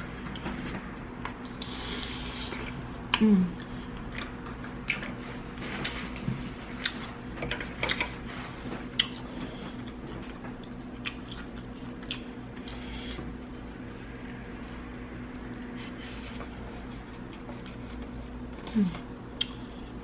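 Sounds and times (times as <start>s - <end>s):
person chewing food: 0.2s - 13.6s, 15.9s - 20.0s
person humming mm: 3.1s - 3.7s, 18.6s - 19.1s.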